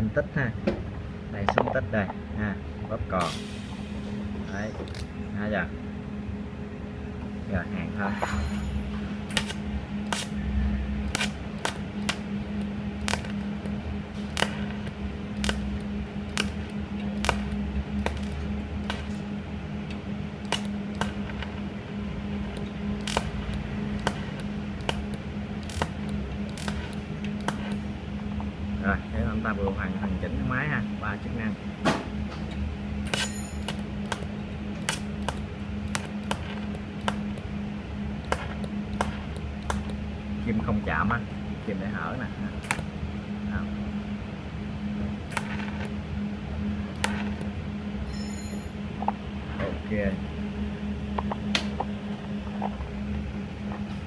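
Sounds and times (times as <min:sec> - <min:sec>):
welding machine hum: 0:02.1 - 0:54.0
sharp welding ticks: 0:09.3 - 0:10.4, 0:11.1 - 0:21.6, 0:22.4 - 0:27.9, 0:32.5 - 0:37.5, 0:38.2 - 0:40.1, 0:42.6 - 0:42.9, 0:45.2 - 0:45.9, 0:46.9 - 0:47.5
sharp irregular clicks: 0:11.1 - 0:19.2, 0:19.9 - 0:21.6, 0:22.4 - 0:27.8, 0:32.5 - 0:37.5, 0:38.2 - 0:40.0, 0:42.6 - 0:42.9, 0:45.3 - 0:45.9, 0:46.9 - 0:47.5.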